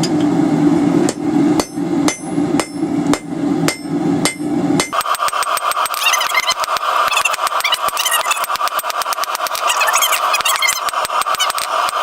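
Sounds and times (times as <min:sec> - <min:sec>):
hammer striking hot steel on anvil: 0:01.0 - 0:06.0.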